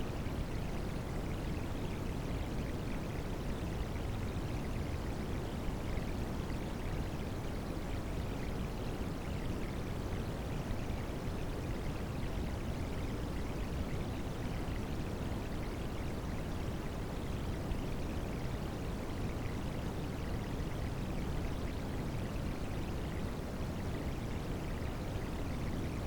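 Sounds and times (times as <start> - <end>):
white noise hiss: 0.0 - 3.0.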